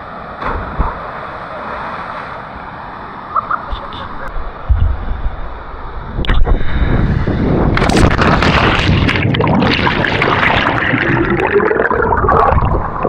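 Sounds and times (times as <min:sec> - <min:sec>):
churning rushing water: 0:00.0 - 0:03.6, 0:05.4 - 0:13.0
body splashing into water: 0:07.8 - 0:13.0.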